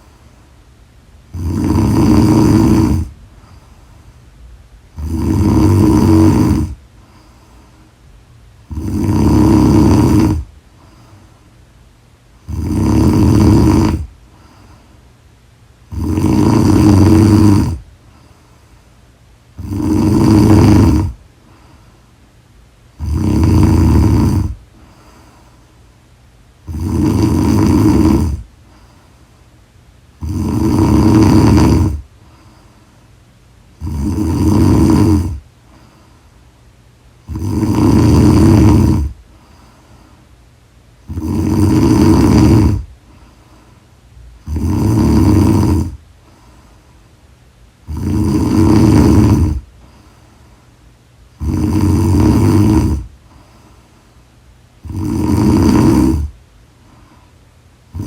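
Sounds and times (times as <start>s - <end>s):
quiet breathing: 0.0s - 58.0s
woman snoring loudly: 1.3s - 3.2s, 5.0s - 6.8s, 8.6s - 10.5s, 12.4s - 14.1s, 15.9s - 17.8s, 19.6s - 21.2s, 23.0s - 24.6s, 26.6s - 28.5s, 30.2s - 32.1s, 33.8s - 35.4s, 37.2s - 39.2s, 41.0s - 42.9s, 44.4s - 46.0s, 47.8s - 49.7s, 51.4s - 53.1s, 54.8s - 56.4s.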